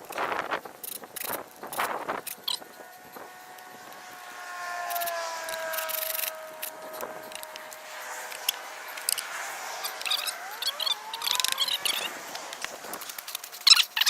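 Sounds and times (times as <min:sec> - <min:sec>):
sharp clicks: 0:04.9 - 0:14.0
nails screeching out of wood: 0:09.8 - 0:12.1, 0:13.0 - 0:14.0.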